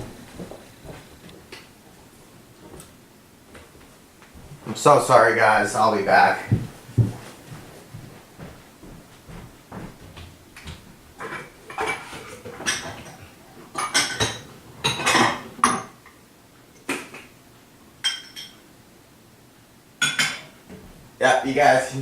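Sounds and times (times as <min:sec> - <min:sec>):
dishes clattering: 0:11.2 - 0:16.2, 0:18.0 - 0:18.6, 0:20.0 - 0:20.6.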